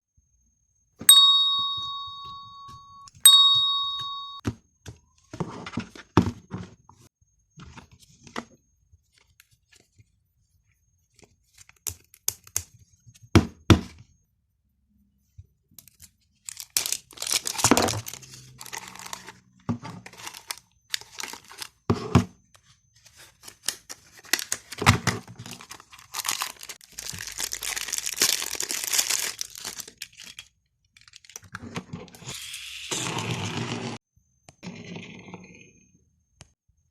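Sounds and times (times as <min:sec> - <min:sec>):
ringing dings: 0:01.1 - 0:04.4
wrapping crinkling and tearing: 0:16.5 - 0:19.3, 0:25.4 - 0:31.5.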